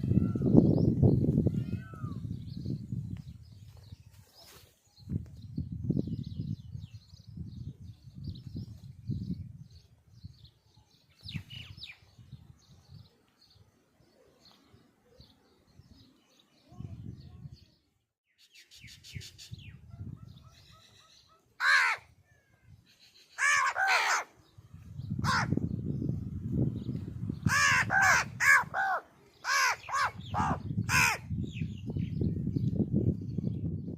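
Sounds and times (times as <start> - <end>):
crows cawing: 21.6 - 22.1, 23.4 - 24.3, 25.2 - 25.6, 27.5 - 31.2.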